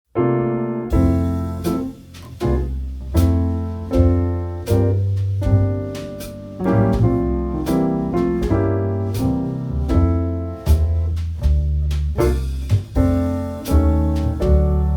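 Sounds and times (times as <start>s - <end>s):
low sustained bass notes: 0.9s - 14.9s.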